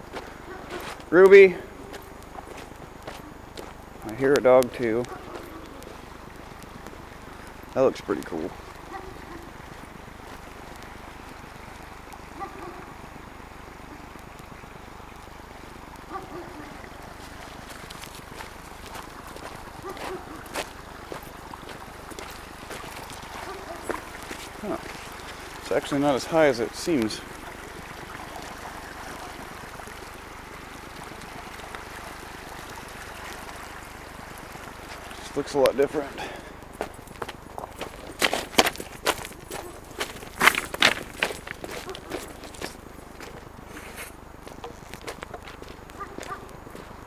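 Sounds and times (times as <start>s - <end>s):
water rushing along shoreline: 0.0s - 47.0s
distant animal calls: 8.6s - 9.7s, 16.1s - 17.0s, 21.7s - 25.6s, 45.9s - 46.6s.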